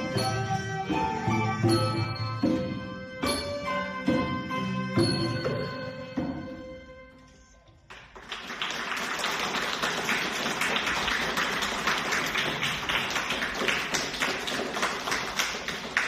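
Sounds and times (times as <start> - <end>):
ringing musical notes: 0.0 - 7.3
audience applause: 7.9 - 16.0.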